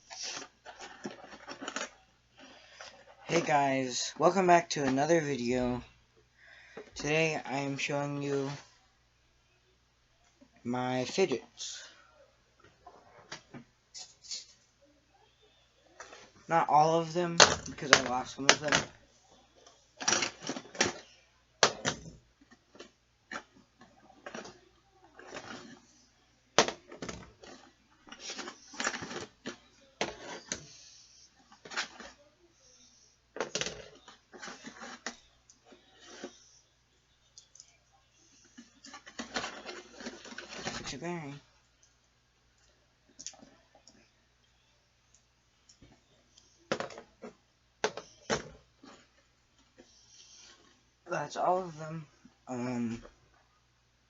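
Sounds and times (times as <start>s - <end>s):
plastic toys clicking and clattering: 0.2s - 3.5s, 19.6s - 25.9s, 26.6s - 30.7s, 33.4s - 36.3s, 38.4s - 41.0s.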